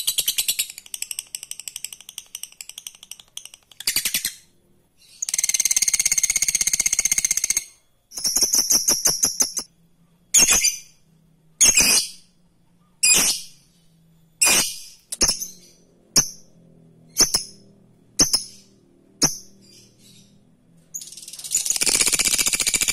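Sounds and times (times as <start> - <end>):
lovebird chattering trill: 0.0 - 9.7, 14.4 - 16.5, 17.1 - 17.6, 18.2 - 22.9
lovebird shrill calls: 14.4 - 16.4.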